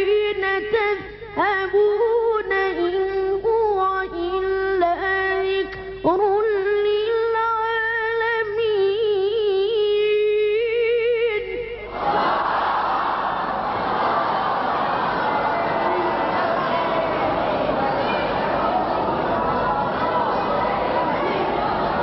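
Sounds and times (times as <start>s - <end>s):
person reciting melodically: 0.0s - 11.8s
crowd calling out: 11.9s - 22.0s.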